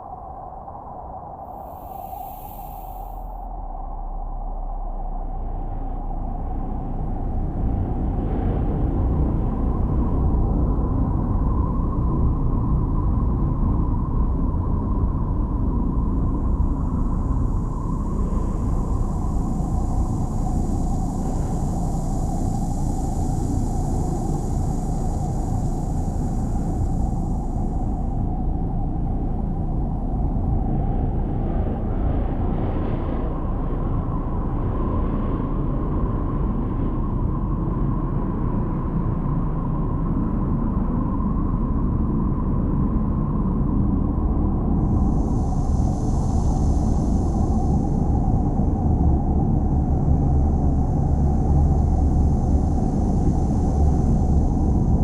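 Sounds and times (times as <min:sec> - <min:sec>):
faint steady tone: 0:00.0 - 0:07.5
low rumble: 0:00.0 - 0:55.0
faint high hiss: 0:01.5 - 0:03.3.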